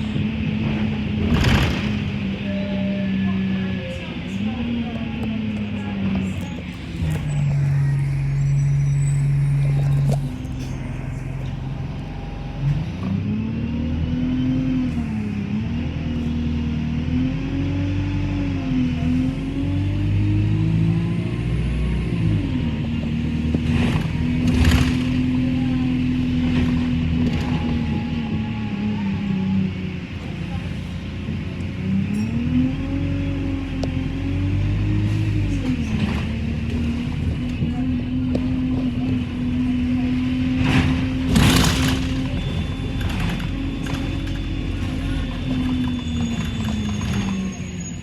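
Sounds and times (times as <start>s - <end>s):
bus engine running: 0.0s - 48.0s.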